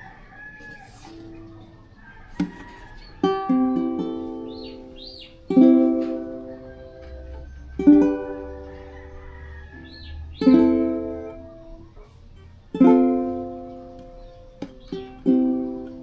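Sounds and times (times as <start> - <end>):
ukulele chords ringing: 3.2 - 16.0.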